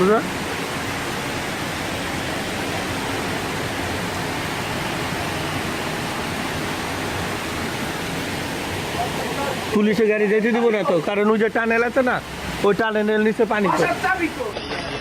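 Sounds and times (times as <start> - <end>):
water rushing: 0.0 - 15.0.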